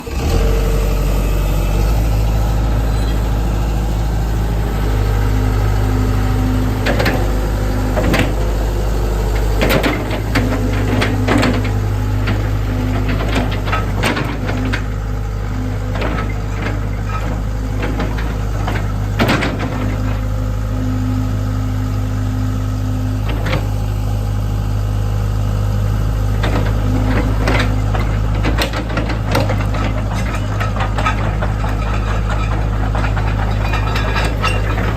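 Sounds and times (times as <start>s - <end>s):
excavator diesel engine running: 0.0s - 34.9s
sharp metallic knocks and clanks: 28.4s - 34.9s.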